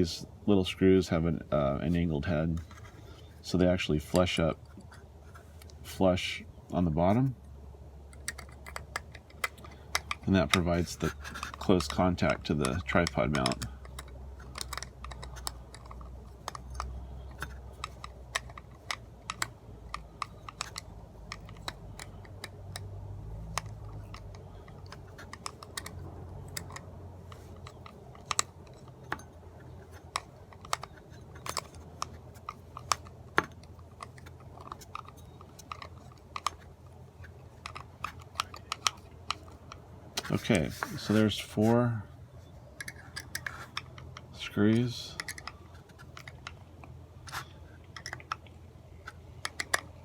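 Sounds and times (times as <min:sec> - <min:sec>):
faint low hum: 0:00.0 - 0:50.0
parts being handled: 0:00.0 - 0:50.0
screw being turned by hand tool: 0:08.2 - 0:22.9, 0:23.5 - 0:41.2.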